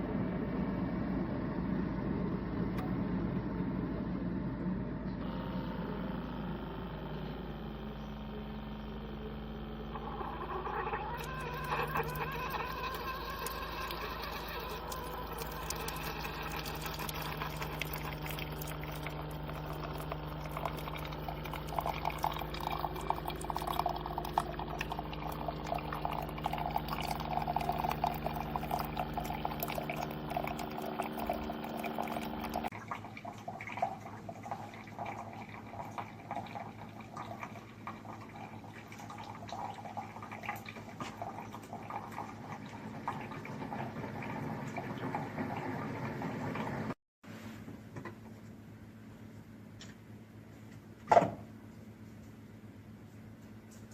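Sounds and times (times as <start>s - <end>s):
coffee maker motor hum: 0.0s - 33.0s, 33.8s - 47.0s
coffee splashing into cup: 10.3s - 42.4s.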